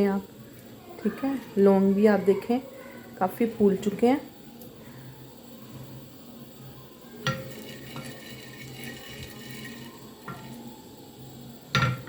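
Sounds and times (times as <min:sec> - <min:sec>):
metal pan clinking: 0:07.2 - 0:10.6.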